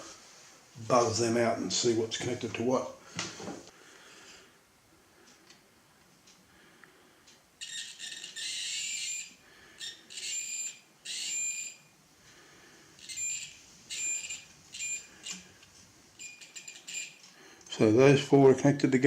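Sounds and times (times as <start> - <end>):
continuity tester beeping: 7.6 - 11.9, 13.0 - 15.5, 16.2 - 17.3.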